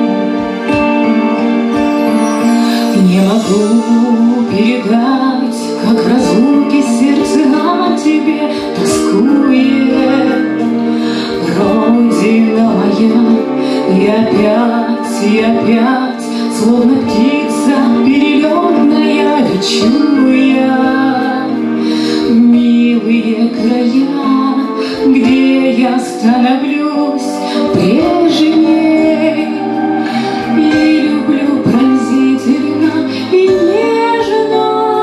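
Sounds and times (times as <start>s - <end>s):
instrumental accompaniment: 0.0s - 35.0s
woman singing: 2.1s - 35.0s.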